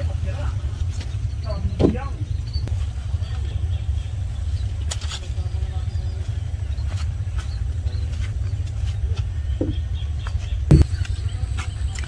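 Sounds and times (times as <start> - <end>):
sharp knock: 10.7 - 10.9.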